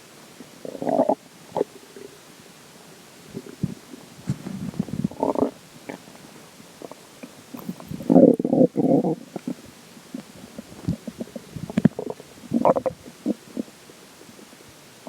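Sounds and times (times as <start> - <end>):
stomach gurgling: 0.6 - 2.2, 3.3 - 6.2, 6.8 - 13.8.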